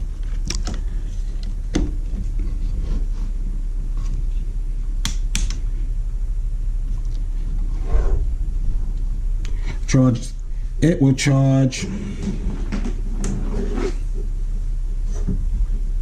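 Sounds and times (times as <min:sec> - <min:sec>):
steady low rumble: 0:00.0 - 0:13.2, 0:14.0 - 0:16.0.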